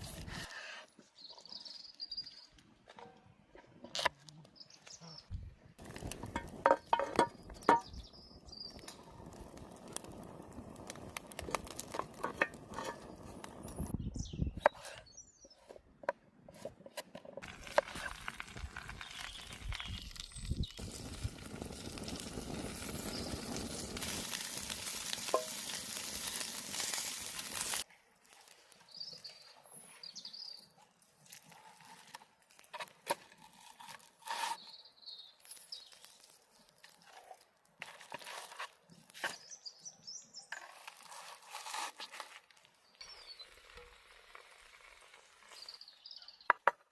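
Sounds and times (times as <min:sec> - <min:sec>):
chicken sizzling on grill: 0:05.8 - 0:13.9, 0:17.4 - 0:30.4, 0:42.6 - 0:46.2.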